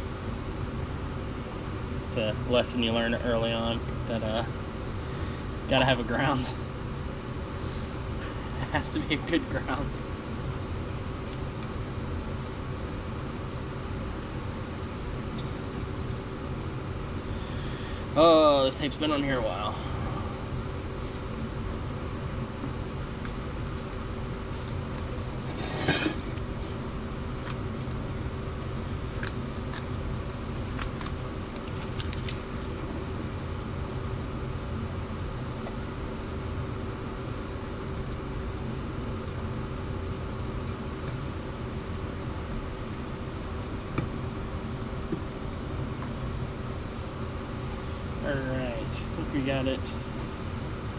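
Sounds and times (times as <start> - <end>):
steady low hum: 0.0 - 50.9
tape tearing and crackling: 27.2 - 27.7, 28.5 - 32.9.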